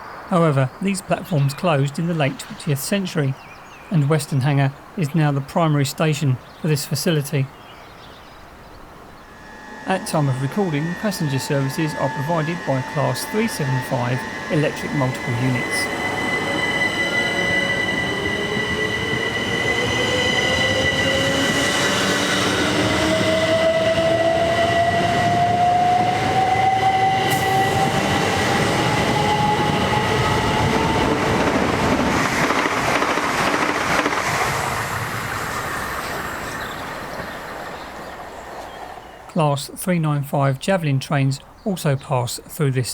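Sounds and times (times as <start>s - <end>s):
electric train whine: 8.4s - 39.4s
wheel and rail noise: 8.5s - 39.4s
traction motor whine rising: 9.2s - 31.9s.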